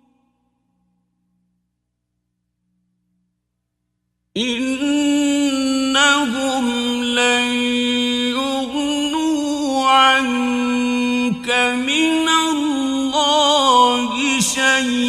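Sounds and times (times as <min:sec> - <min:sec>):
man chanting recitation: 0:04.4 - 0:15.0.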